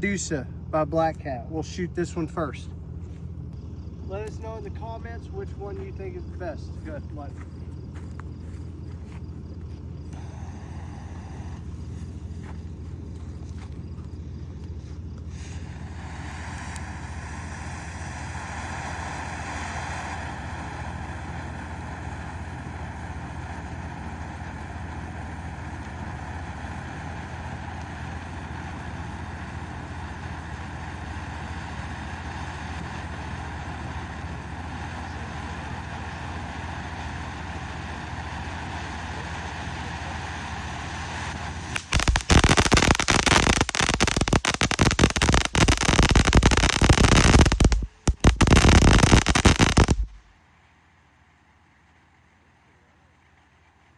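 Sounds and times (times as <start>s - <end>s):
low steady hum: 0.0s - 38.2s, 41.6s - 53.9s
fountain firework hissing: 10.1s - 12.4s, 15.3s - 50.3s
loud crackling pops: 41.6s - 50.4s.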